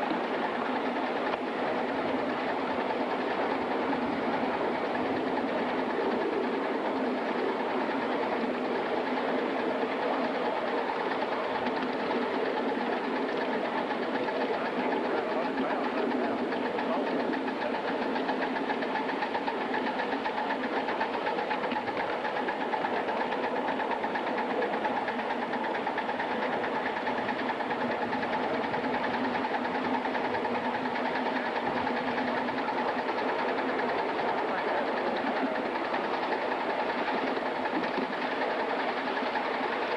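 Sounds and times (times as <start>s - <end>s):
steam locomotive exhaust beat: 0.0s - 39.9s.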